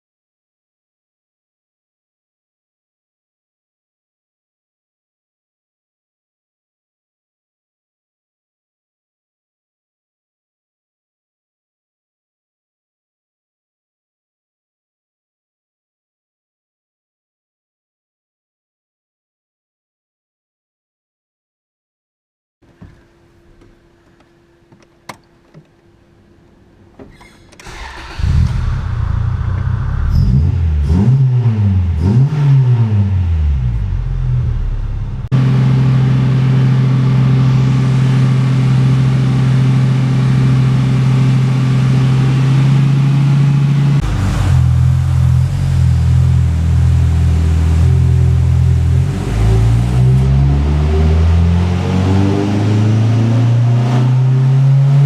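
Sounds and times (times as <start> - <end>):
car engine revving: 27.6 - 55.0.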